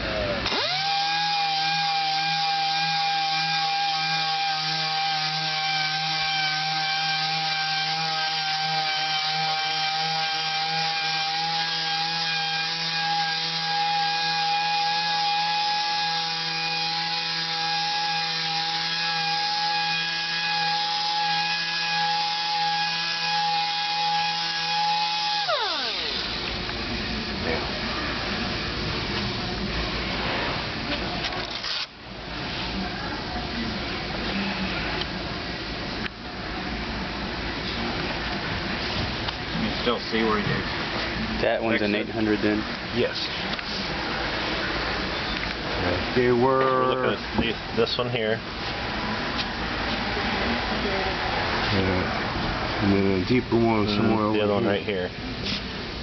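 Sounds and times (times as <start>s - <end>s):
orbital sander whine: 0.0s - 27.7s.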